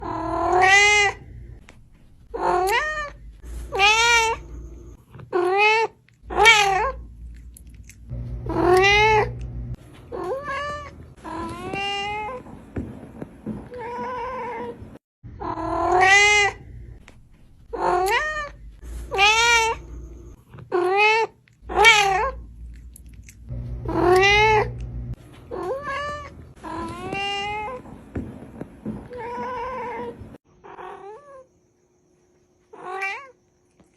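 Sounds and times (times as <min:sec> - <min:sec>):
cat meowing: 0:00.0 - 0:01.3, 0:02.4 - 0:04.5, 0:05.3 - 0:07.0, 0:08.5 - 0:09.5, 0:10.1 - 0:12.5, 0:15.4 - 0:16.6, 0:17.7 - 0:20.0, 0:20.7 - 0:22.4, 0:23.8 - 0:24.8, 0:25.5 - 0:27.8.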